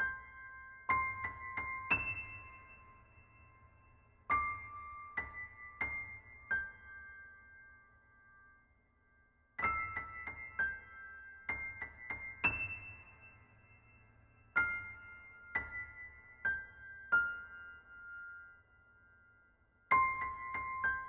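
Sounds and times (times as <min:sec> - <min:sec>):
slow solo piano melody: 0:00.0 - 0:03.5, 0:19.9 - 0:21.0.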